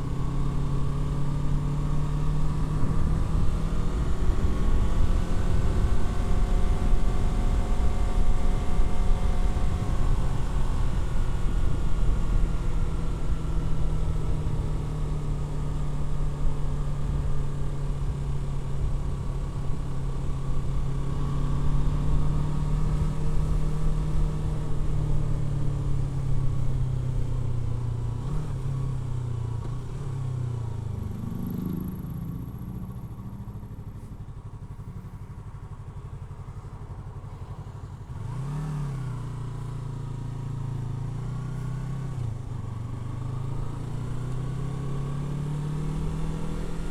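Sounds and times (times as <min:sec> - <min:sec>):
motorcycle engine cruising: 0:00.0 - 0:46.9.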